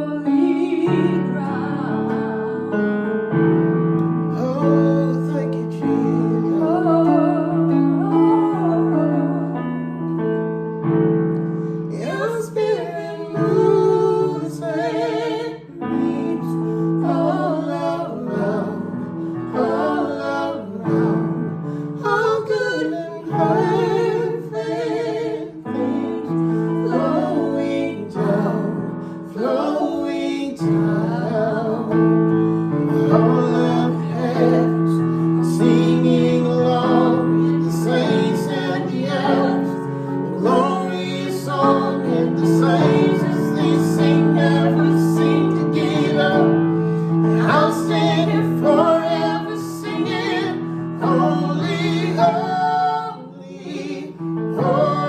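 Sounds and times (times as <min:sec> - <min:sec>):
woman singing slow song: 0:00.0 - 0:02.8, 0:06.0 - 0:09.6
piano chords: 0:00.0 - 0:55.0.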